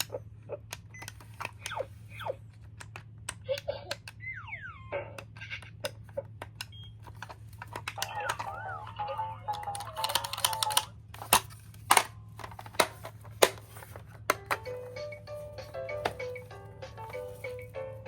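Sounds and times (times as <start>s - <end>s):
plastic toy cars clacking: 0.0s - 4.2s, 5.2s - 8.7s, 9.4s - 15.0s.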